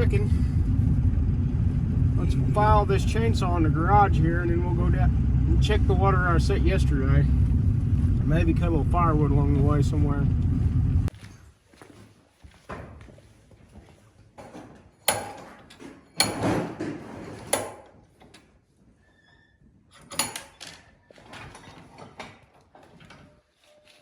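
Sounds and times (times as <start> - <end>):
rattling and scraping: 0.0 - 11.1, 14.4 - 17.8
tools knocking and clattering: 14.4 - 18.4, 19.9 - 23.3.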